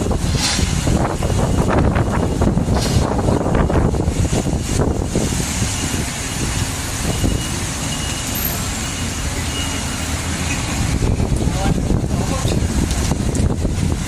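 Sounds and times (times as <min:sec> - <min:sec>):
wind buffeting microphone: 0:00.0 - 0:07.8, 0:10.4 - 0:14.0
strong wind rushing: 0:00.0 - 0:07.9, 0:10.7 - 0:14.0.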